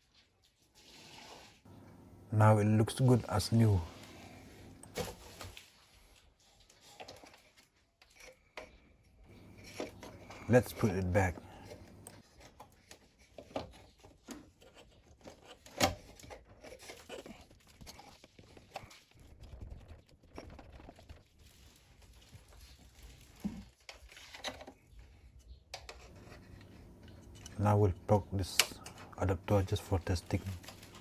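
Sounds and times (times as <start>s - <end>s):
light clicks and rustles: 1.7s - 5.4s, 9.3s - 12.2s, 25.9s - 31.0s.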